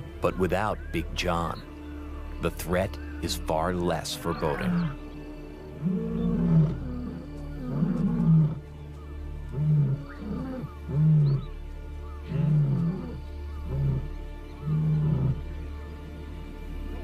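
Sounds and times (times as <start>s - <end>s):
lions roaring: 5.7s - 8.7s, 9.5s - 15.4s.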